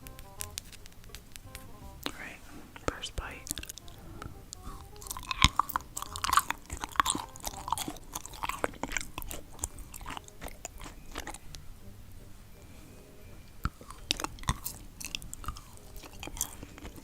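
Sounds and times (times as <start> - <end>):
person chewing crunchy food: 3.3 - 11.5, 13.6 - 17.0.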